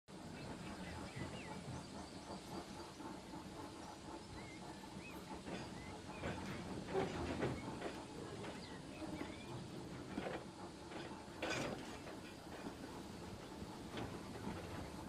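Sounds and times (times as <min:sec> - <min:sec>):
birds chirping: 0:00.2 - 0:10.8.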